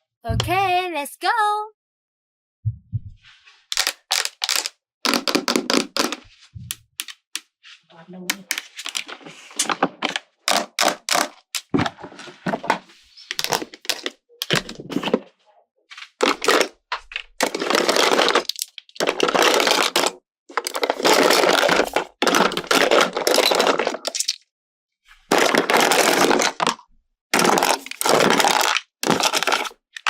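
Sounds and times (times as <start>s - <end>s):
plastic packaging clicks and taps: 3.7s - 7.5s
plastic packaging crackling: 16.2s - 24.4s.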